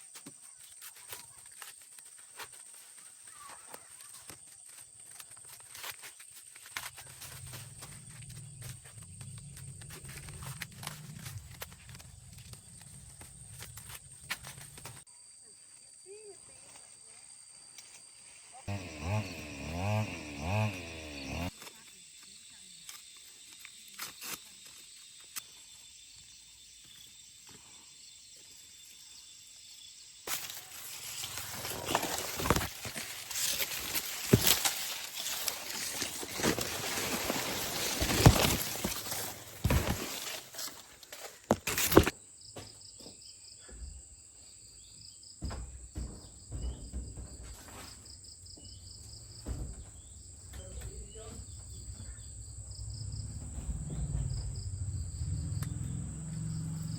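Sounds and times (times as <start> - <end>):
insects chirping: 0.0 - 56.9
loud rustling and crackling: 30.3 - 42.1.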